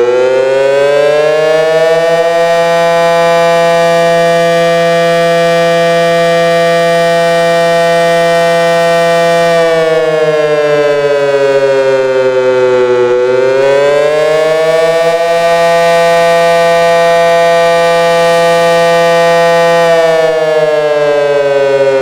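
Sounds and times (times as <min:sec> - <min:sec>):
warning siren wailing: 0:00.0 - 0:22.0.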